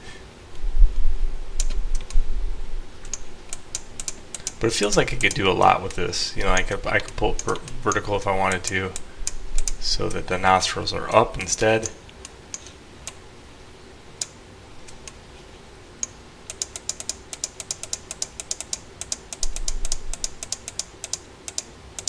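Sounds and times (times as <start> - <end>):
keyboard and mouse clicking: 1.6 - 2.2, 3.0 - 10.2, 16.0 - 22.0.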